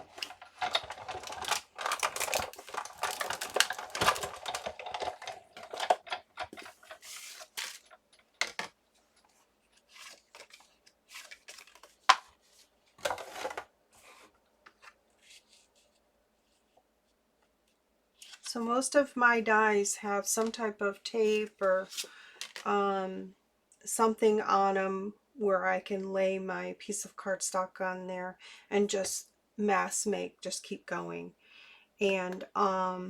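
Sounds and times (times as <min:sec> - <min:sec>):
paper rustling with clicks: 0:00.0 - 0:16.6.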